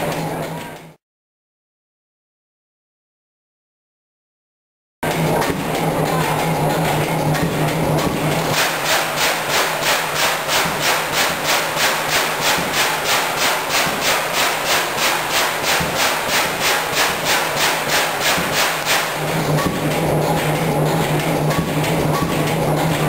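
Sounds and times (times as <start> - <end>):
air compressor engine running: 5.0 - 23.0
rhythmic rasping air hiss: 5.1 - 23.0.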